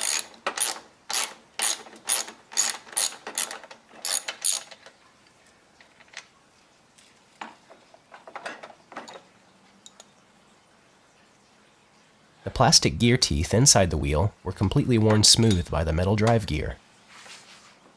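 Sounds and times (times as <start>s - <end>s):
ratchet clicking: 0.0s - 4.8s.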